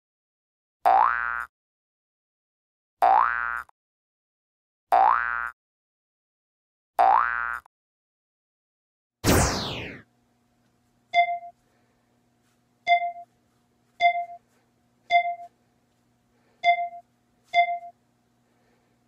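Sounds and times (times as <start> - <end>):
falling whoosh: 9.2 - 10.0
short electronic beeps: 11.2 - 11.5, 12.9 - 13.3, 14.0 - 14.4, 15.1 - 15.5, 16.6 - 18.0.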